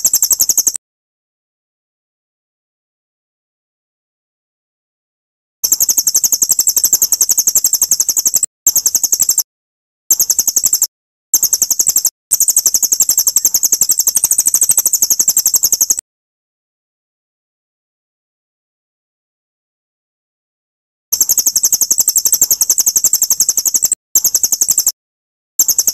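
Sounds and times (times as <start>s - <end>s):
songbird high-pitched trill: 0.0s - 0.8s, 5.6s - 9.4s, 10.1s - 16.0s, 21.2s - 25.0s, 25.6s - 25.9s.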